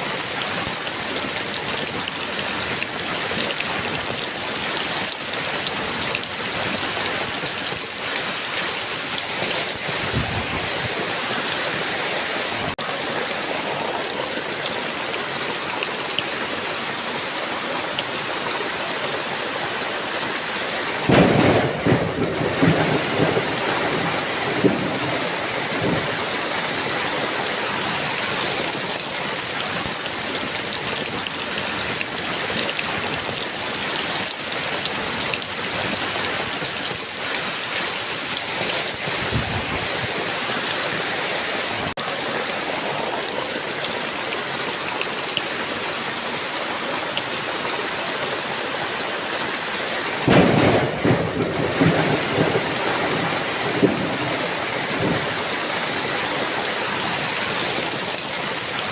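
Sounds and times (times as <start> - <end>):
heavy rain hissing: 0.0 - 58.9
thunder rumbling: 21.0 - 26.4, 50.2 - 55.6.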